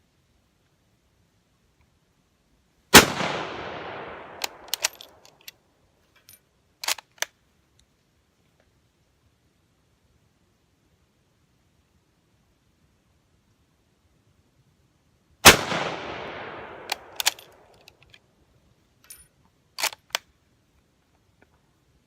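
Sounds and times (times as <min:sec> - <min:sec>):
rifle shot echoing: 0:02.9 - 0:05.2, 0:15.4 - 0:17.7
rifle bolt metallic clicks: 0:03.8 - 0:05.6, 0:06.2 - 0:07.4, 0:15.5 - 0:18.3, 0:19.0 - 0:20.3.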